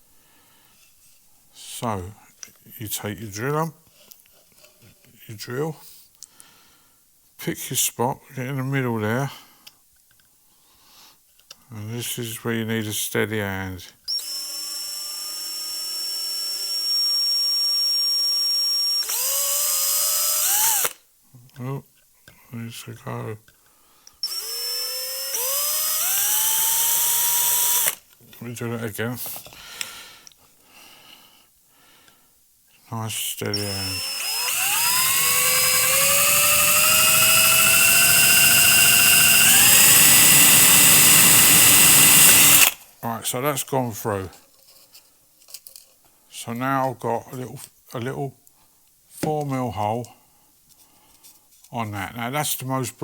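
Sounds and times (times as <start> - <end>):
electric drill whining: 14.1 - 21.0, 24.2 - 28.0, 33.5 - 42.8.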